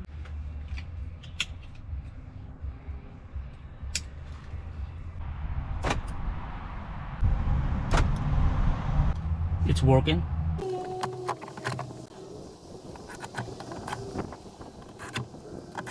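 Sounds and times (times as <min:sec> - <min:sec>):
low rumble: 0:01.8 - 0:10.6.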